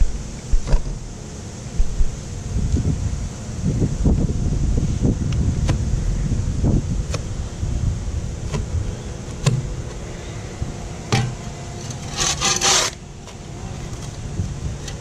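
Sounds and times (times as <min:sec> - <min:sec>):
wind rumble on microphone: 0:00.0 - 0:12.6, 0:13.4 - 0:15.0
spade knocking into sod: 0:11.1 - 0:11.4
spade scraping: 0:11.1 - 0:14.2.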